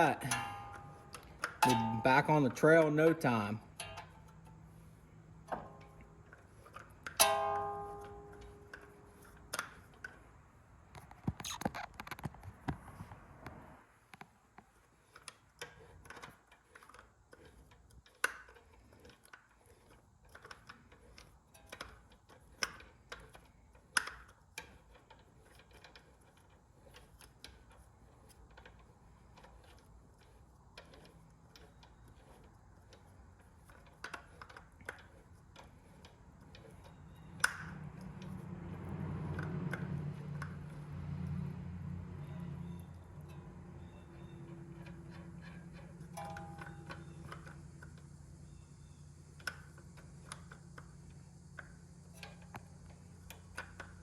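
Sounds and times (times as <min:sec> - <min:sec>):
sharp metal knocks: 0:00.0 - 0:02.6, 0:07.1 - 0:09.1
light metallic clicks and taps: 0:28.5 - 0:48.6.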